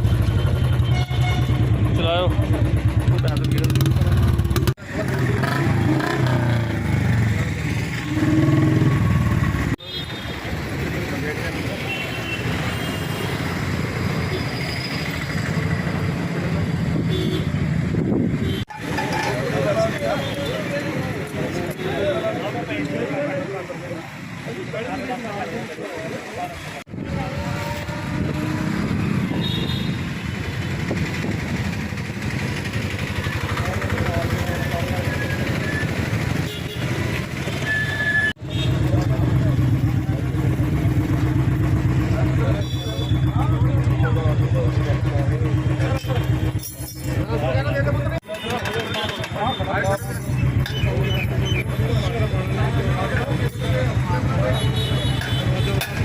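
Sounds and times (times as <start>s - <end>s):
motorcycle engine revving and popping: 0.0s - 9.8s, 26.9s - 56.0s.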